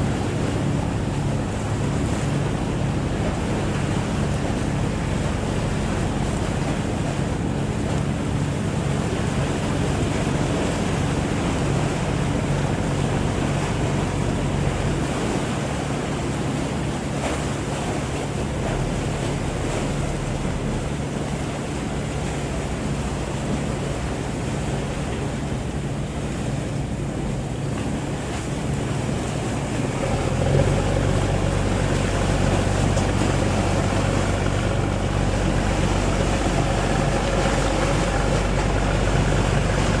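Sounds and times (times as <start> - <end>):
boat engine running: 0.0 - 40.0
water noise: 0.0 - 40.0
wind: 0.0 - 40.0.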